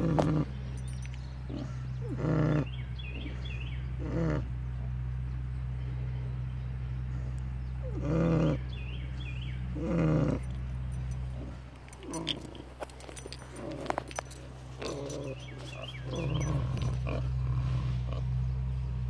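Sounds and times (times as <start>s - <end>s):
pigs snoring: 0.0s - 0.6s, 1.5s - 4.6s, 7.1s - 8.7s, 9.7s - 10.6s, 11.2s - 18.4s
steady low hum: 0.0s - 19.0s.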